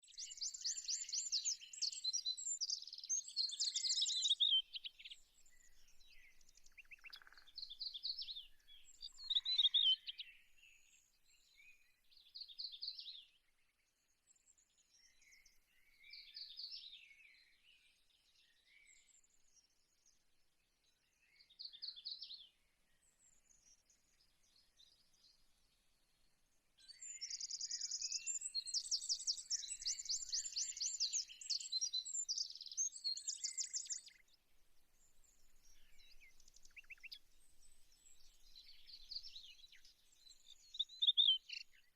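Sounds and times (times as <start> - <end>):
small birds chirping: 0.0 - 13.4, 14.6 - 19.4, 26.8 - 41.9.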